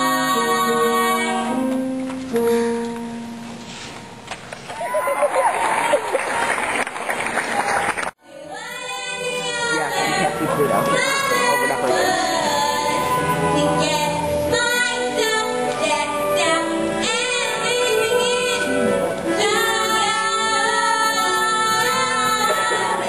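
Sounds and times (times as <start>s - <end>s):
girl singing: 0.0s - 1.8s, 8.3s - 23.0s
backing music: 8.3s - 23.0s.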